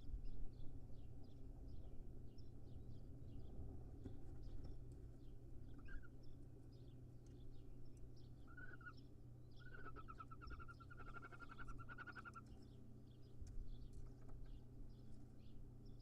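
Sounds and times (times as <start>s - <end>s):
low steady hum: 0.0s - 16.0s
animal chirp: 8.5s - 9.0s, 9.6s - 12.6s.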